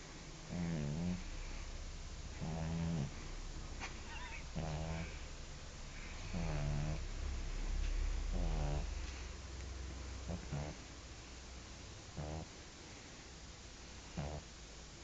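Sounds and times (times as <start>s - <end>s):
dog snoring: 0.5s - 1.6s, 2.3s - 3.3s, 4.0s - 5.2s, 5.9s - 7.1s, 8.3s - 9.2s, 10.2s - 10.9s, 12.1s - 12.6s, 14.1s - 14.5s.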